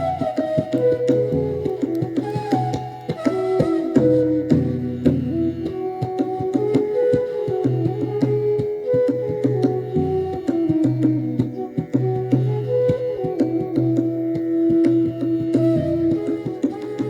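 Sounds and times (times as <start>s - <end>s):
tabla strokes: 0.0s - 17.0s.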